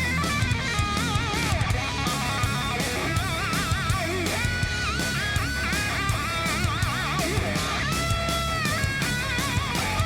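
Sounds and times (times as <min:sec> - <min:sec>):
bass guitar: 0:00.0 - 0:10.0
drums: 0:00.0 - 0:10.0
electric guitar melody: 0:00.0 - 0:10.0.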